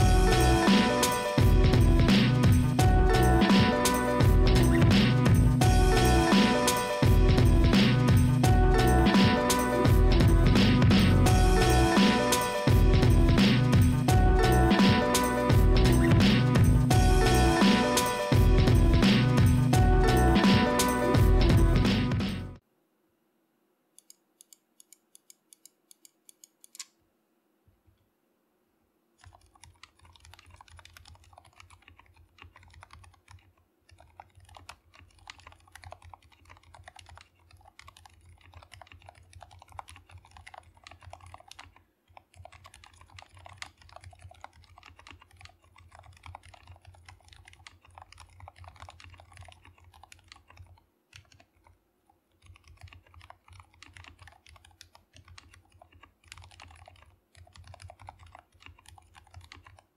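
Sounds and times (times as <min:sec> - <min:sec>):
fast typing on mechanical keyboard: 0:29.2 - 0:59.9.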